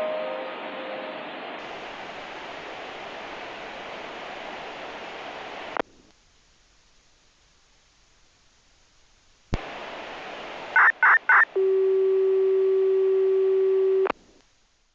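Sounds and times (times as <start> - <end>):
radio hiss: 0.1 - 6.2, 9.5 - 11.6.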